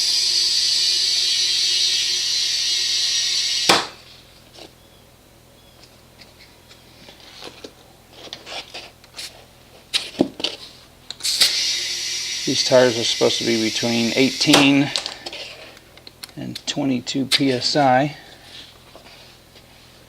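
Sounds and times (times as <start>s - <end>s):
compressed air hissing: 0.0s - 4.1s, 11.2s - 15.8s.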